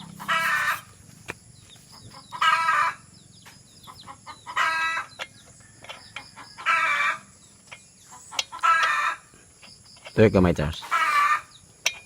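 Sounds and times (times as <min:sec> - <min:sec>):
chicken calling: 0:00.0 - 0:01.0, 0:01.9 - 0:03.2, 0:03.9 - 0:05.2, 0:06.3 - 0:07.3, 0:08.1 - 0:09.3, 0:10.8 - 0:11.6
small birds chirping: 0:00.0 - 0:12.0.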